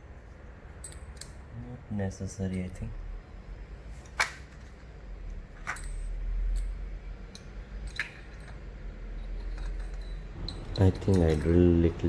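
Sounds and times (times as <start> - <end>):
low handling rumble: 9.5 - 12.0.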